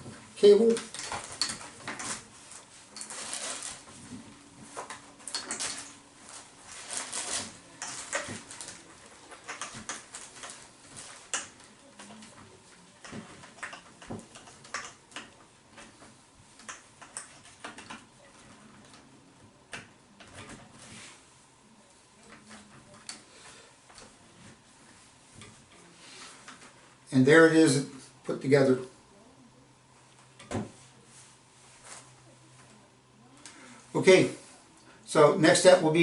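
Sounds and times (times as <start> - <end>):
cable rustling and scraping: 0.0 - 27.1, 30.0 - 34.8
plastic parts clicking: 6.8 - 12.4, 13.0 - 16.0.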